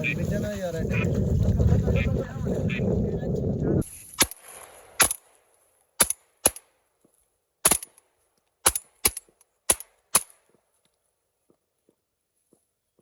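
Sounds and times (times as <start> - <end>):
shotgun shots: 4.2 - 5.3, 6.0 - 6.7, 7.6 - 8.0, 8.6 - 10.3.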